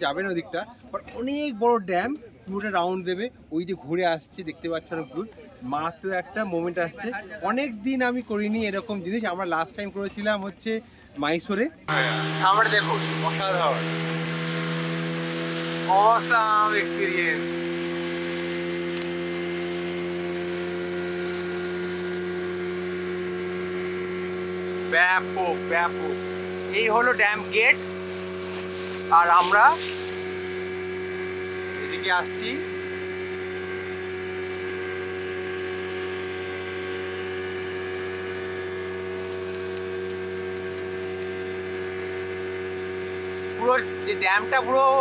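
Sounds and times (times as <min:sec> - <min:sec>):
speedboat engine droning: 0:11.9 - 0:45.0
steady hiss: 0:11.9 - 0:45.0
water wash: 0:11.9 - 0:45.0.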